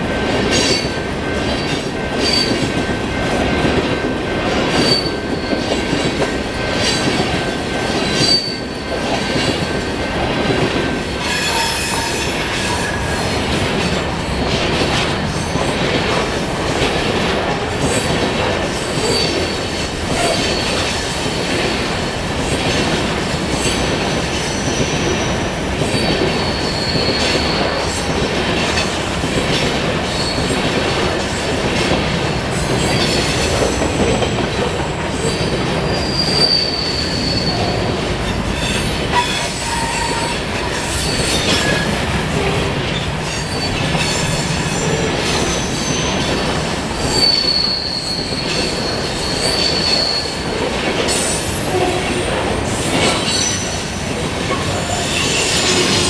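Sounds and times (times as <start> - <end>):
train wheels rumbling on rail: 0.0 - 56.0
high flange squeal: 35.2 - 38.0, 43.2 - 52.3.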